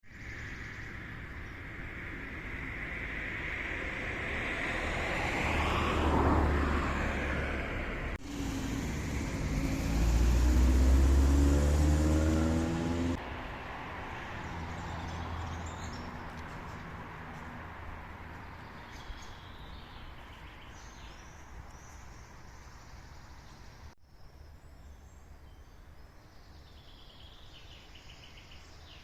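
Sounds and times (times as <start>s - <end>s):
vehicle engine hum: 0.5s - 18.9s
car passing by: 1.8s - 19.0s.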